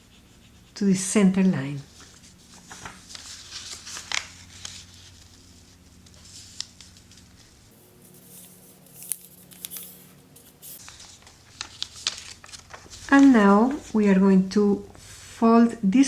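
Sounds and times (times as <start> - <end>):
sharp clicks of paper crease: 1.9 - 13.4
paper crinkling: 1.9 - 14.0.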